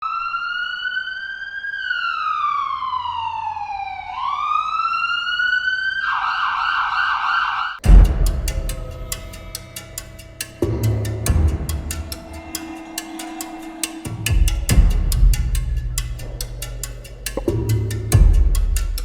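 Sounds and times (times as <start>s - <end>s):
siren wailing: 0.0s - 7.8s
loud bang: 7.8s - 19.0s.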